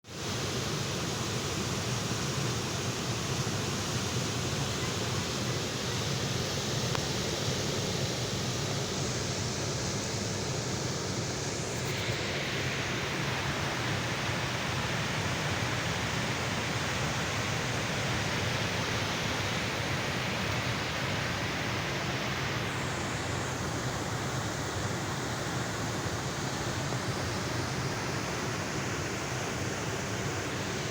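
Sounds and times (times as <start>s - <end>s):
rushing floodwater: 0.1s - 30.9s.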